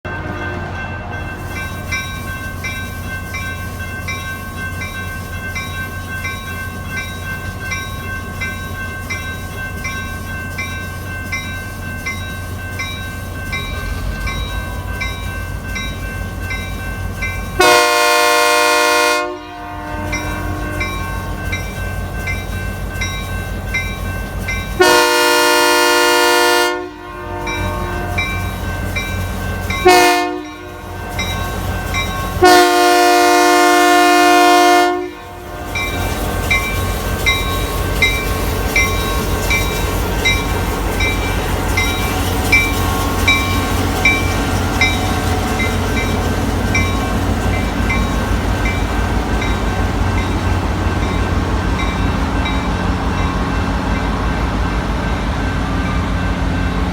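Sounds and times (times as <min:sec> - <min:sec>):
locomotive and train rumble: 0:00.0 - 0:56.9
locomotive air horn blasts: 0:17.6 - 0:21.1, 0:24.8 - 0:28.6, 0:29.8 - 0:31.0, 0:32.4 - 0:35.8.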